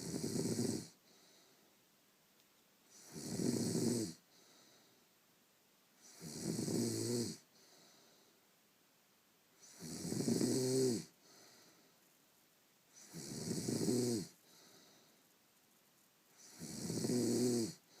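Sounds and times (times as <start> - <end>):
loud snoring: 0.0 - 1.0, 3.0 - 4.2, 6.0 - 7.4, 9.6 - 11.2, 13.0 - 14.4, 16.4 - 17.9
quiet breathing out: 0.8 - 1.9, 4.1 - 5.2, 7.4 - 8.6, 10.7 - 12.1, 14.2 - 15.4, 17.6 - 18.0.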